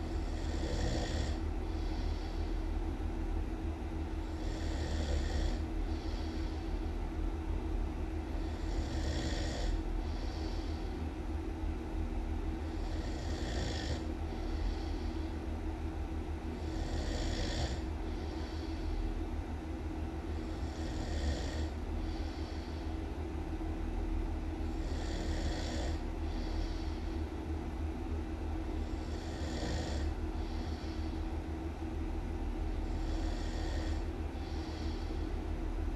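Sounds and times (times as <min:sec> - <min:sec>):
steady low hum: 0:00.0 - 0:35.9
person snoring: 0:00.1 - 0:02.4, 0:04.3 - 0:06.6, 0:08.4 - 0:10.9, 0:12.7 - 0:15.2, 0:16.6 - 0:18.8, 0:20.4 - 0:22.8, 0:24.8 - 0:27.0, 0:28.8 - 0:31.1, 0:32.9 - 0:35.3.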